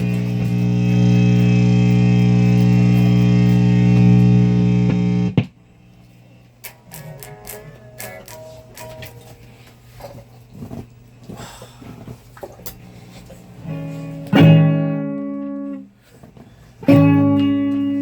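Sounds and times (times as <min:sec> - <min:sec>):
guitar chord strummed: 0:00.0 - 0:05.4, 0:06.6 - 0:09.6, 0:13.6 - 0:15.9, 0:16.8 - 0:18.0
guitar picked notes: 0:00.0 - 0:05.4, 0:06.6 - 0:09.7, 0:13.6 - 0:15.9, 0:16.8 - 0:18.0.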